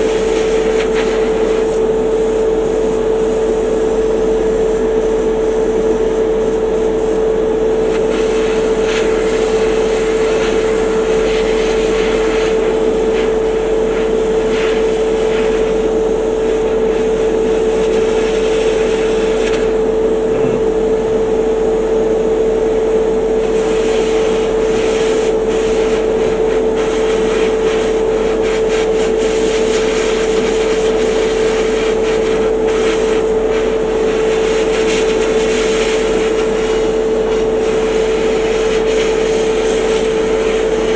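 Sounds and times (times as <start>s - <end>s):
small electric motor humming: 20.3s - 20.7s.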